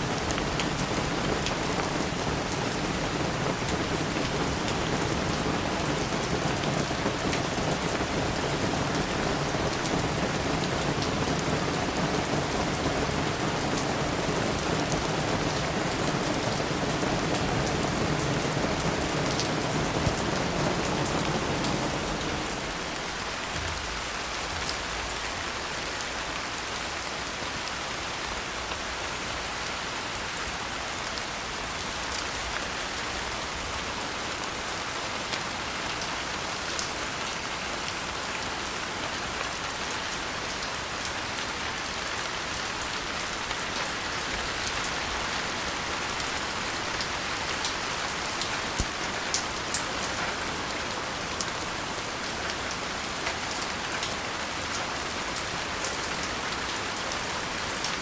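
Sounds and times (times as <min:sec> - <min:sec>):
raindrop hits: 0:00.0 - 0:25.3
steady rain falling: 0:00.0 - 0:58.0.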